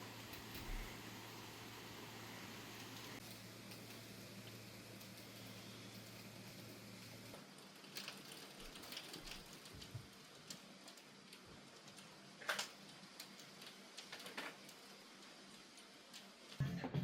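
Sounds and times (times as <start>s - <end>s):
low hiss: 0.0s - 7.8s.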